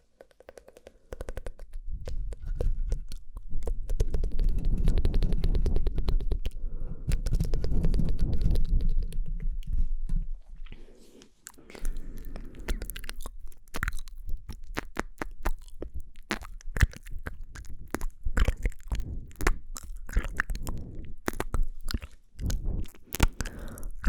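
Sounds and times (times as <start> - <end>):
wet mouth clicks and smacks: 0.0 - 9.8, 11.2 - 24.0
low rumble: 17.1 - 21.4.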